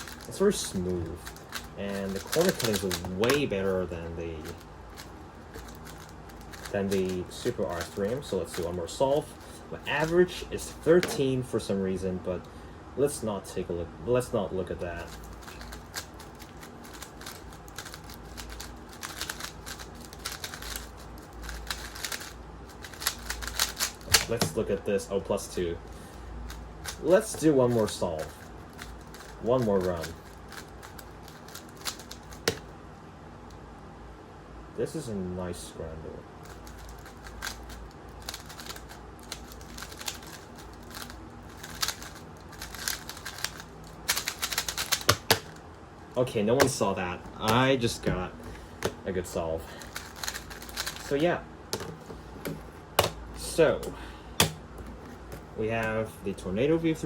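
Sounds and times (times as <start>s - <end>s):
puzzle cube turning clatter: 0.0s - 9.3s, 14.8s - 24.7s, 26.5s - 32.6s, 36.4s - 45.6s, 49.8s - 51.2s.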